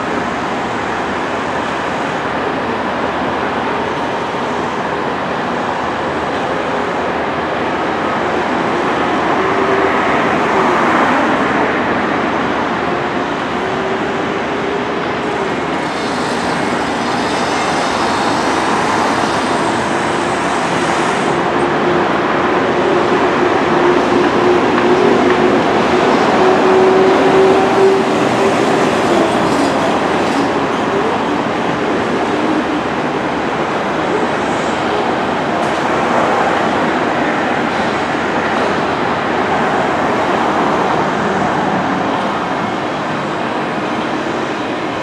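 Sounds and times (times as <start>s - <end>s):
moving train running: 0.0s - 45.0s.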